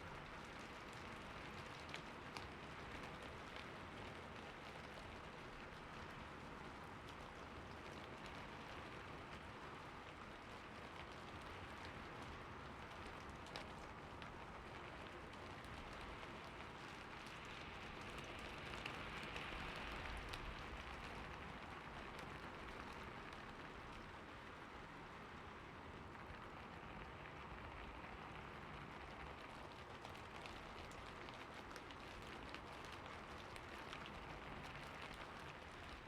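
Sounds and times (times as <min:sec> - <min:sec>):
light rain hissing: 0:07.2 - 0:36.0
raindrops ticking: 0:26.3 - 0:36.0.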